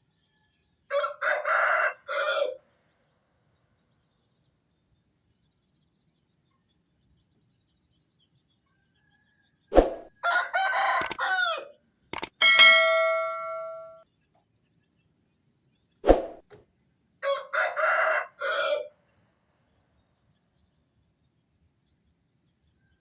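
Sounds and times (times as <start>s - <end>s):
rooster crowing: 0.9s - 2.6s, 10.0s - 11.8s, 12.4s - 14.0s, 17.2s - 18.9s
click: 11.0s - 11.2s, 12.2s - 12.4s
bell-like ring: 12.2s - 14.0s
sharp knock: 12.2s - 14.0s.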